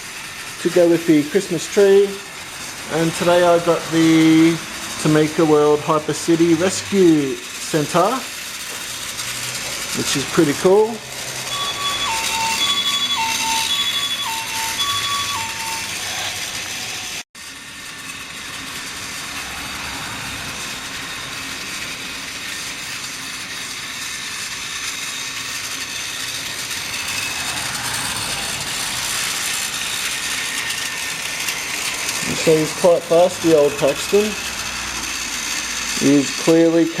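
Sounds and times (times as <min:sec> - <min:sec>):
toy train motors whirring: 0:00.0 - 0:37.0
wheels rattling over rails: 0:00.0 - 0:37.0
electronic two-tone siren beeps: 0:11.5 - 0:16.5.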